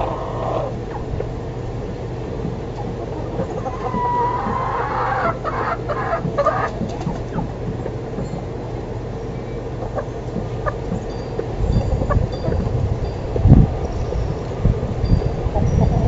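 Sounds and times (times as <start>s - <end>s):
chicken drawn-out call: 0.0s - 1.1s, 2.8s - 6.8s
chickens clucking: 0.0s - 16.0s
steady low hum: 0.0s - 16.0s.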